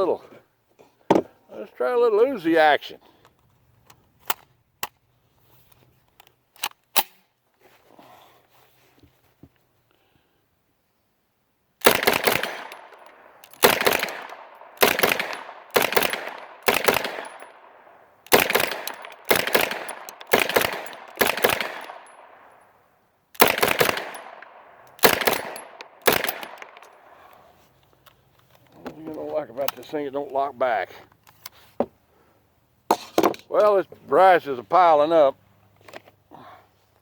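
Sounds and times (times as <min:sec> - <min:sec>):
single gunshots with echo: 0:11.8 - 0:22.5, 0:23.4 - 0:26.8.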